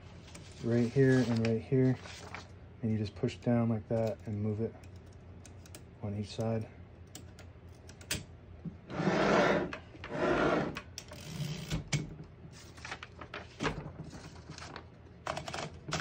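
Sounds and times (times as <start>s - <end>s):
typewriter carriage sliding rasp: 8.9s - 11.7s.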